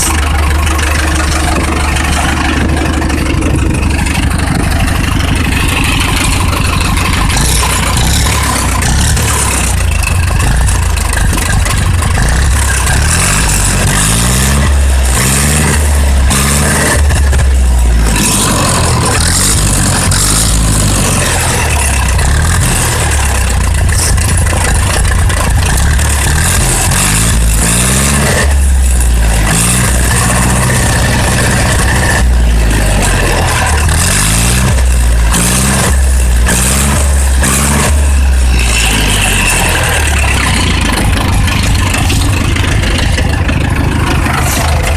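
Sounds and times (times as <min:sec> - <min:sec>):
diesel tractor engine revving: 0:00.0 - 0:44.9.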